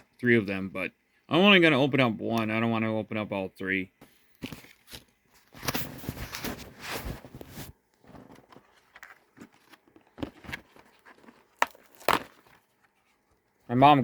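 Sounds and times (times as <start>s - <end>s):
soft handling noises: 3.9s - 14.0s.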